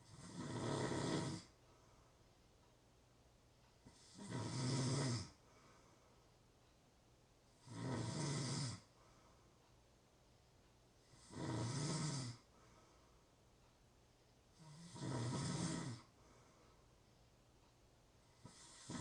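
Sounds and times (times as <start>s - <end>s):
person snoring: 0.0s - 1.6s, 3.8s - 5.4s, 7.6s - 8.9s, 11.1s - 12.5s, 14.6s - 16.1s, 18.4s - 19.0s.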